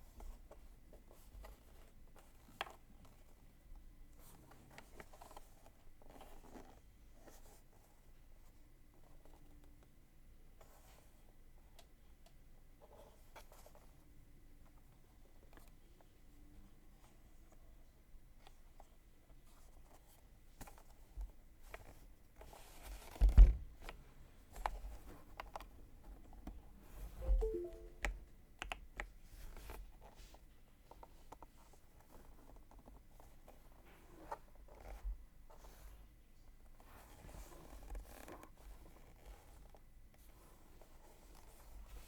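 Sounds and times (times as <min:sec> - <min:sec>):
soft tones: 0:27.2 - 0:28.2.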